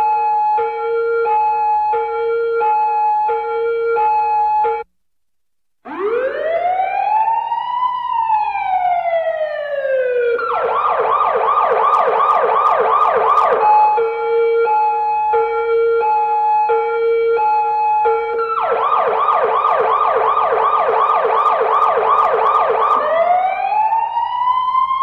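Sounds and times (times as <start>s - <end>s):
electronic police siren: 0.0s - 4.8s, 5.9s - 25.0s.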